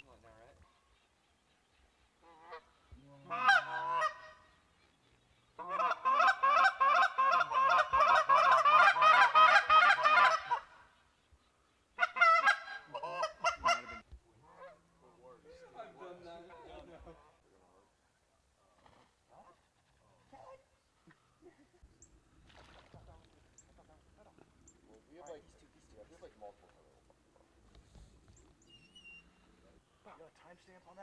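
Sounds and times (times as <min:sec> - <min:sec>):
geese honking: 0:02.2 - 0:04.6, 0:05.6 - 0:11.0, 0:12.0 - 0:14.9.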